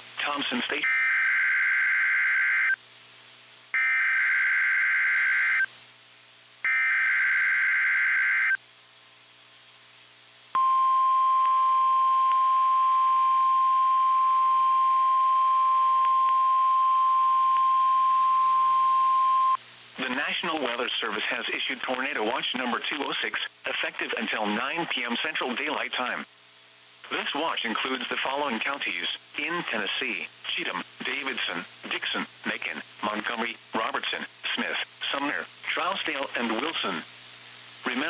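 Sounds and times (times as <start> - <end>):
screechy digital data bursts: 0.2 - 2.8, 3.8 - 5.7, 6.6 - 8.6
steady warning alarm tone: 3.8 - 5.7, 6.6 - 8.6, 10.6 - 19.6.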